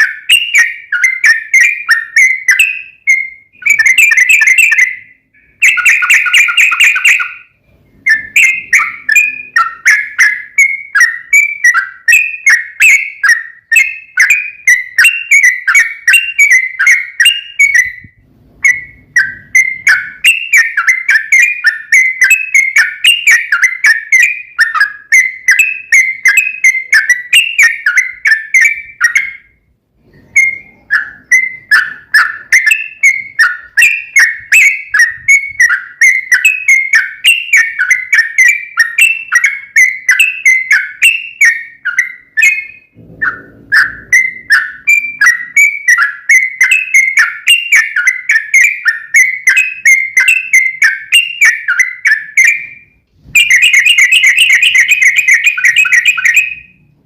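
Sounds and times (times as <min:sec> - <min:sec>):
bird chattering song: 0:00.0 - 0:57.0.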